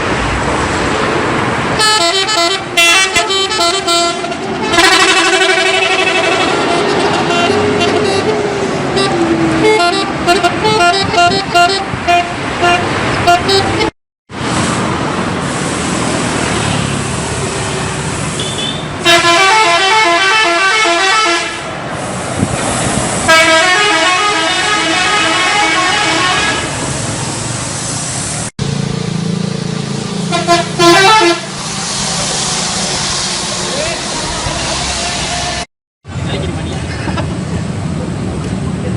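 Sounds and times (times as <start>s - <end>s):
engine and street noise: 0.0s - 38.9s
musical air horn melodies: 1.8s - 13.9s, 18.4s - 21.7s, 23.2s - 26.8s, 30.3s - 31.6s.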